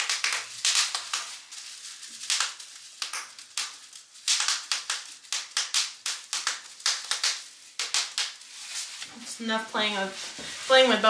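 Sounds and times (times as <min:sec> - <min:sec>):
bubble wrap popping: 0:00.0 - 0:11.0.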